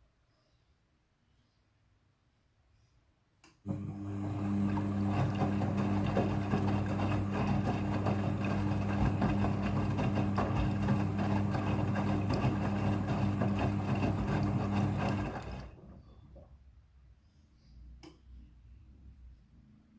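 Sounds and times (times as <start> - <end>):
washing machine running: 3.7 - 16.5.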